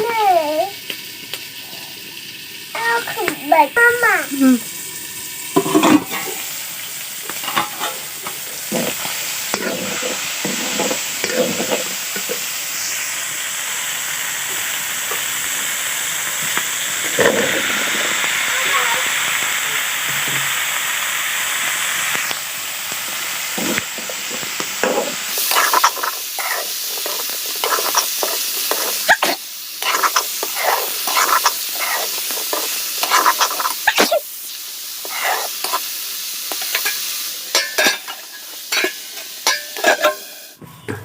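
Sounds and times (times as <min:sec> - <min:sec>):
food sizzling in a pan: 0:00.0 - 0:40.6
spatula scraping a pan: 0:07.4 - 0:12.4, 0:23.6 - 0:34.2, 0:35.0 - 0:35.9, 0:36.5 - 0:40.6.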